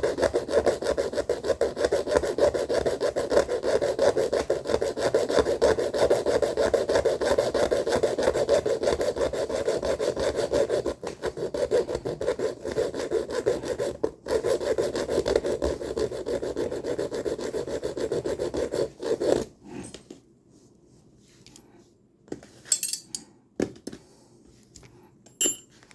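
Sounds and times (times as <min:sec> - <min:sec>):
hand saw cutting: 0:00.0 - 0:19.5.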